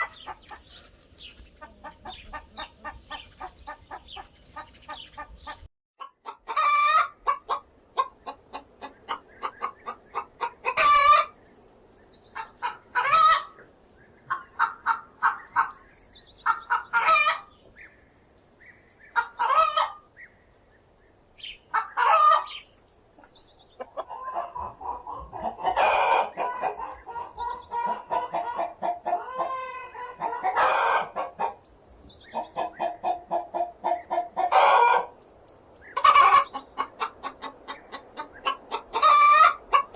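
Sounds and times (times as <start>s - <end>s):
hen cackling: 0.0s - 0.8s, 1.6s - 11.4s, 12.3s - 13.6s, 14.3s - 15.8s, 16.4s - 17.5s, 19.1s - 20.1s, 21.7s - 22.6s, 23.2s - 31.6s, 32.3s - 35.2s, 35.8s - 39.9s.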